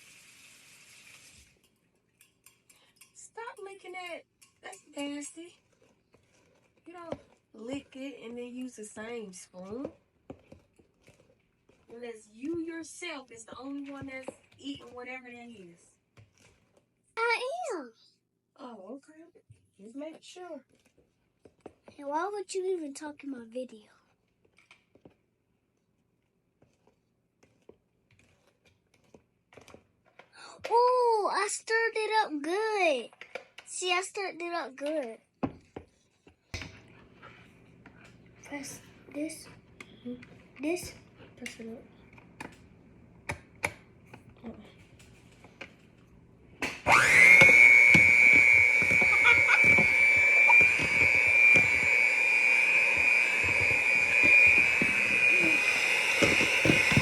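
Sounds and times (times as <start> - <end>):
spoon stirring batter in bowl: 1.0 - 17.1, 19.6 - 22.0, 24.1 - 30.7, 34.8 - 46.2, 47.0 - 57.0
electric mixer motor whining: 46.6 - 57.0.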